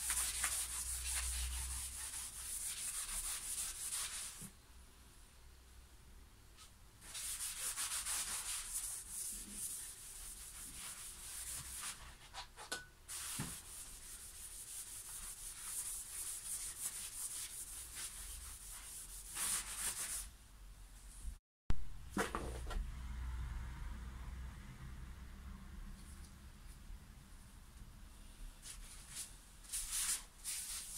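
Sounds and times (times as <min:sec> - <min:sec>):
sandpaper rubbing on wood: 0:00.0 - 0:04.4, 0:07.0 - 0:12.1, 0:13.1 - 0:20.3, 0:29.7 - 0:30.9.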